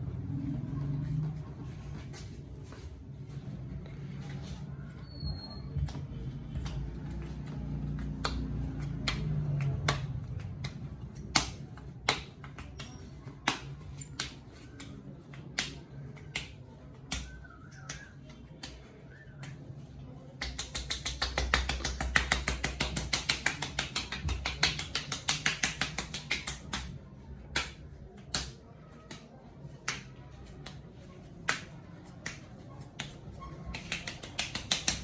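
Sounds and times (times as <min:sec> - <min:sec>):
hands slapping head: 0:05.8 - 0:06.9, 0:08.0 - 0:19.7, 0:20.4 - 0:35.0.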